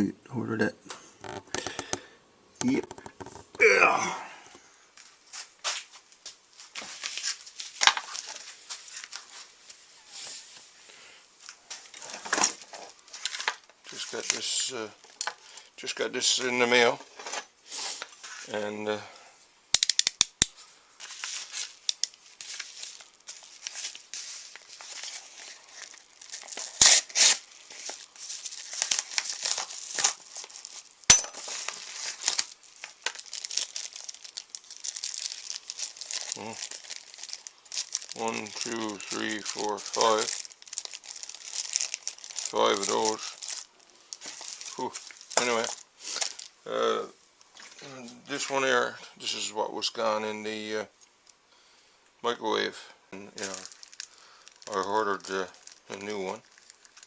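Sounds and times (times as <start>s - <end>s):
rustling and crinkling of handling: 4.5s - 19.2s, 20.5s - 51.4s, 52.6s - 57.0s
packaging tearing: 21.0s - 46.5s, 53.4s - 57.0s.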